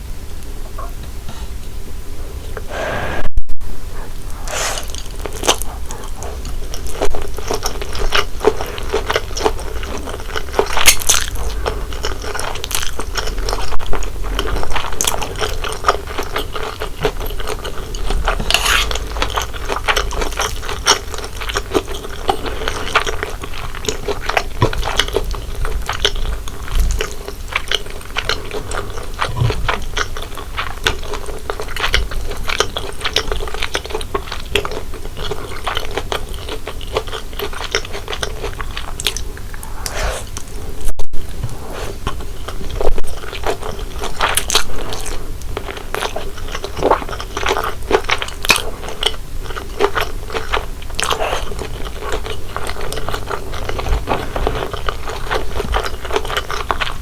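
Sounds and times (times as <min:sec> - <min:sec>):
steady low hum: 0:00.0 - 0:32.4.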